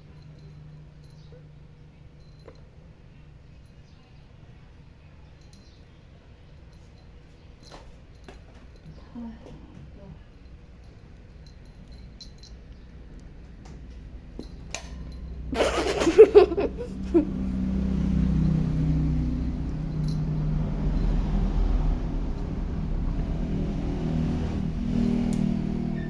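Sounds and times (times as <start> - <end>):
low engine hum: 12.4 - 26.0.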